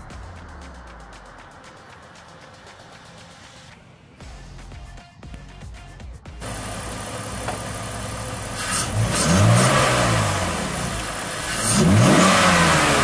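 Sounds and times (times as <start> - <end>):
car engine idling and revving: 0.0 - 5.6, 6.4 - 13.0.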